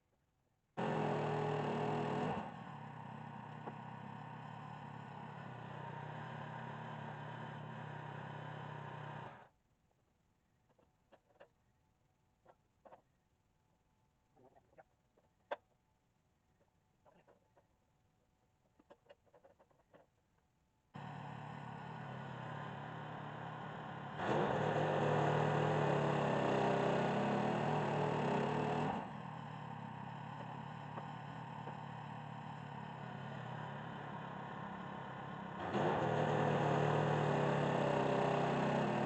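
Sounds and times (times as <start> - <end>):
sawmill gas engine running: 0.8 - 9.5, 21.0 - 39.0.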